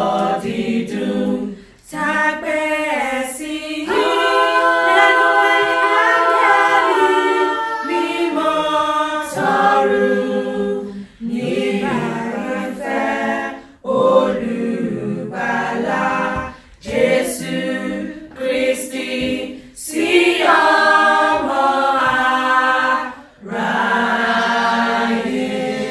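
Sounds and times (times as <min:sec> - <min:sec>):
choir singing a cappella: 0:00.0 - 0:25.9.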